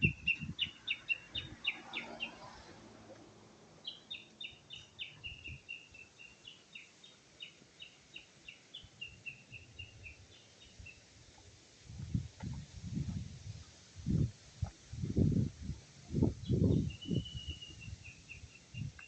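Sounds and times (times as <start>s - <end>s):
songbird singing quick notes: 0.0s - 2.6s, 3.8s - 11.0s, 16.3s - 19.0s.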